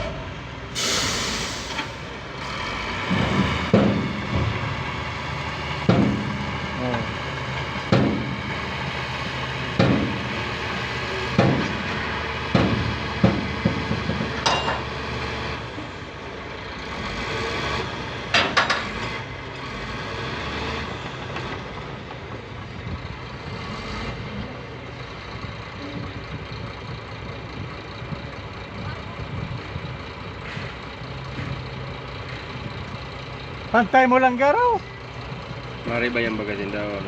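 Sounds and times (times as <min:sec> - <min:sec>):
diesel construction equipment running: 0:00.0 - 0:37.0
sharp metallic clanks: 0:14.4 - 0:14.9.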